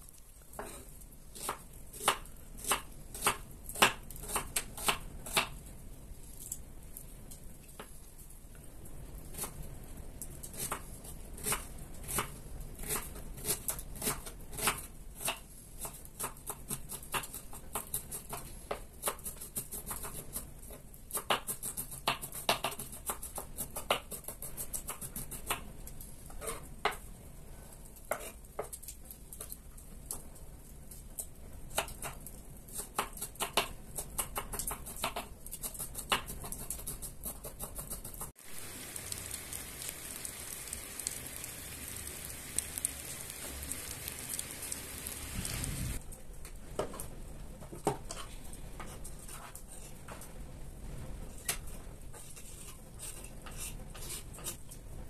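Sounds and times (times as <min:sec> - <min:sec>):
rain hissing: 0:38.4 - 0:46.0.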